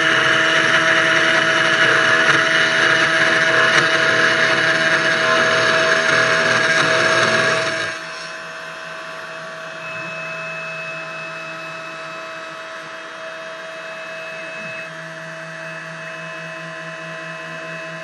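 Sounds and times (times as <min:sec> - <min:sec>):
router spindle motor whine: 0:00.0 - 0:18.0
thin high tone: 0:09.3 - 0:14.9.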